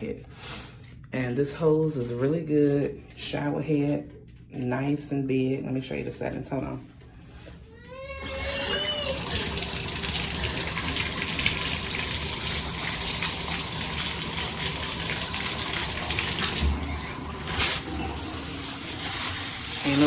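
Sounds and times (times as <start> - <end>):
water spraying from shower head: 8.2 - 20.0.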